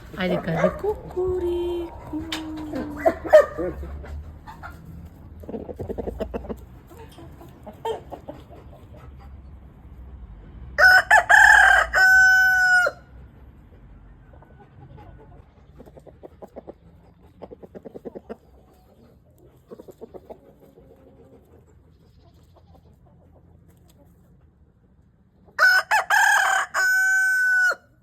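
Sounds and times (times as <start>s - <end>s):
rooster clucking: 0.0s - 9.9s, 10.8s - 24.6s, 25.4s - 28.0s
rooster crowing: 10.8s - 13.1s, 25.6s - 28.0s.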